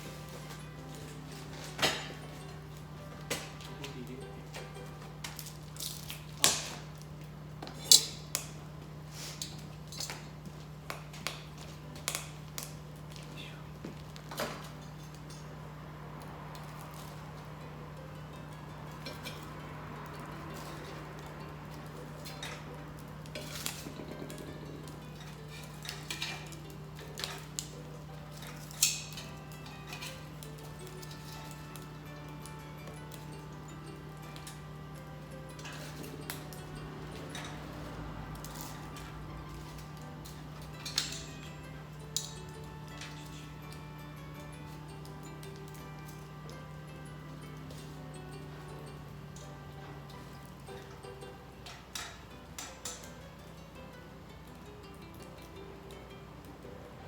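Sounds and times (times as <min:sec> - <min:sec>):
metal cookware clinking: 0:00.0 - 0:13.2, 0:14.0 - 0:15.9, 0:16.5 - 0:57.0
objects clicking and clattering: 0:18.8 - 0:53.5.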